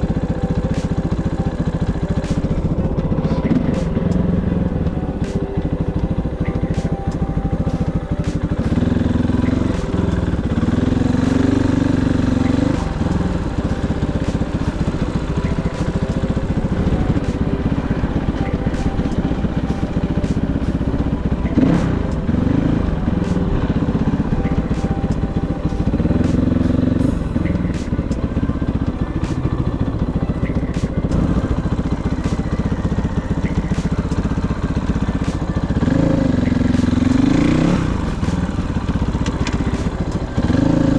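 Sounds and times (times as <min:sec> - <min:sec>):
motorcycle engine revving: 0:00.0 - 0:40.9
sharp ticks and knocks: 0:24.4 - 0:40.8.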